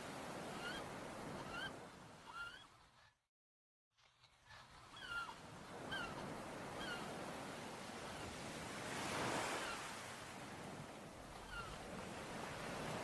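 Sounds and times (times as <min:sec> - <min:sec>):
surf washing: 0:05.7 - 0:13.0.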